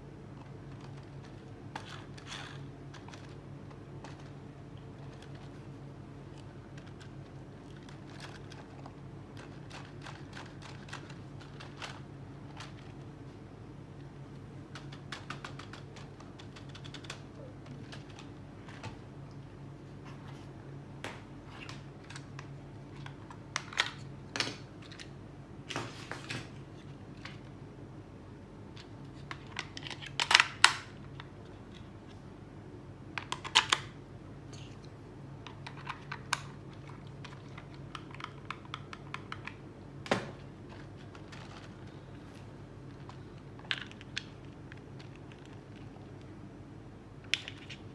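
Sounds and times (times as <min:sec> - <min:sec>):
faint low hum: 0:00.0 - 0:47.9.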